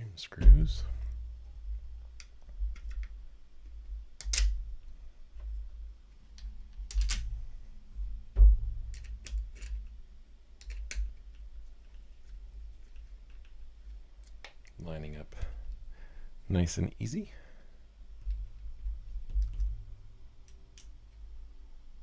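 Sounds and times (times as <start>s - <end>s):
low knocks from handling: 8.3s - 9.1s.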